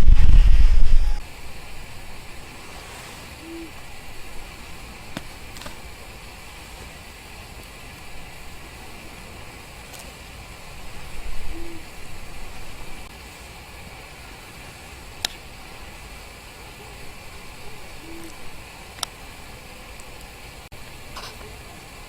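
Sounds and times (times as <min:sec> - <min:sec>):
wind rumble on microphone: 0:00.0 - 0:02.2, 0:10.7 - 0:13.1
steady hiss: 0:00.0 - 0:22.0
low hoot: 0:03.2 - 0:05.4, 0:10.8 - 0:13.0, 0:16.6 - 0:18.7.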